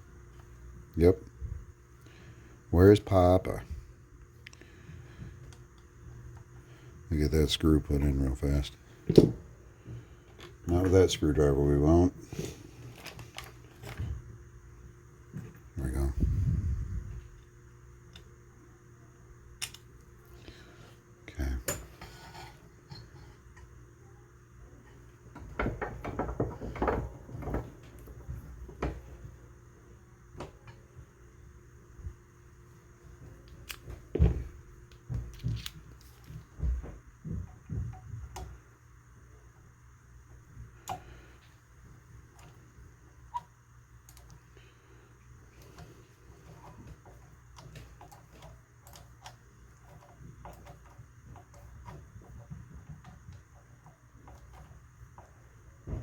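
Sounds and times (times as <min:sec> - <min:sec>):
low steady hum: 0:00.0 - 0:56.0.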